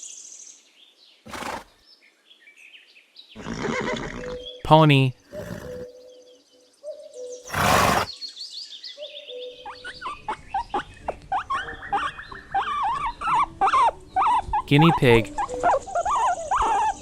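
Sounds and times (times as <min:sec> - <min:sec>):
pony snorting: 0:01.3 - 0:01.7, 0:05.2 - 0:05.9, 0:07.5 - 0:08.1.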